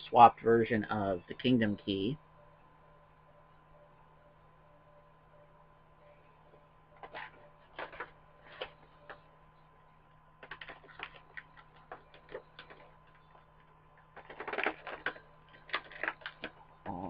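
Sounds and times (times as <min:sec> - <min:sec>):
packaging crinkling: 0:14.1 - 0:17.0.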